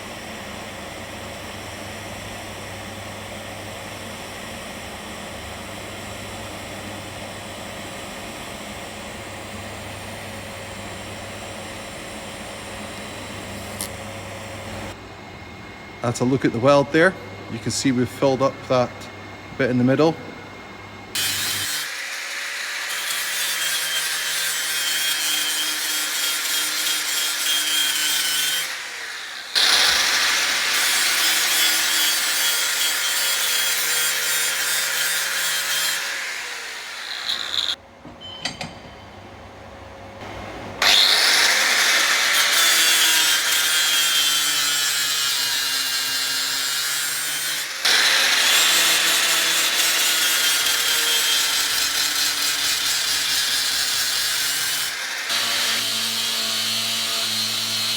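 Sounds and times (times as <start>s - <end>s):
electric grinder grinding steel: 21.1s - 37.8s, 40.8s - 57.9s.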